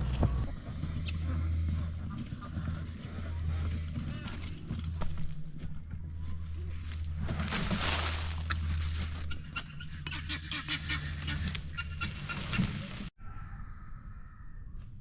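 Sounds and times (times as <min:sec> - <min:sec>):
steady low rumble: 0:00.0 - 0:15.0
fowl honking: 0:08.0 - 0:13.1.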